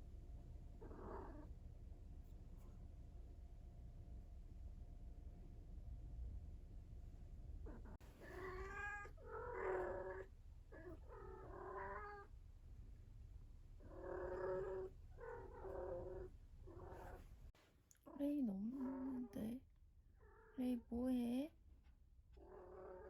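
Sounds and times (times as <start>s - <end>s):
cat yowling: 7.7s - 10.2s.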